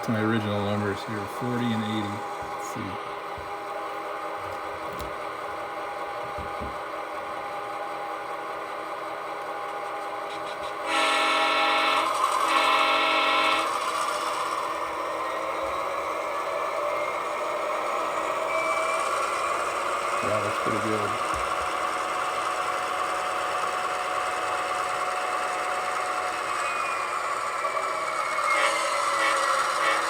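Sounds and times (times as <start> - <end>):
model diesel engine sound: 0.0 - 6.8.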